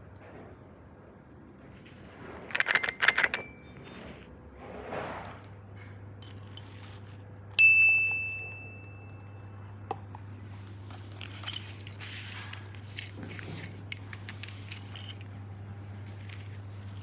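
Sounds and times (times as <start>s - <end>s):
clatter of small clicks: 2.5s - 4.1s
bright ringing ding: 7.6s - 9.9s.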